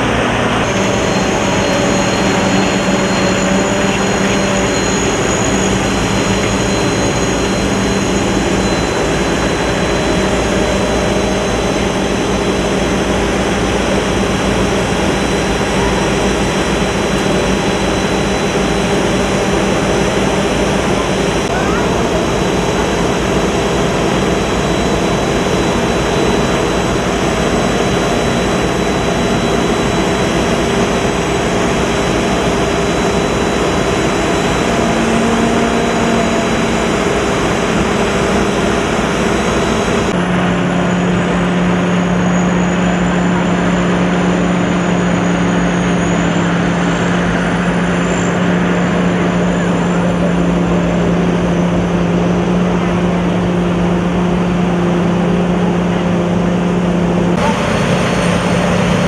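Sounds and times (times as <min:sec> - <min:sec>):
combine harvester running: 0:00.0 - 0:59.0.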